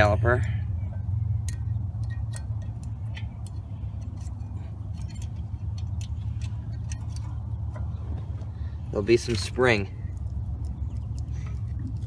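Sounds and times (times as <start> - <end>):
steady low rumble: 0.0 - 12.0
metal clip clicking and clinking: 1.4 - 7.9.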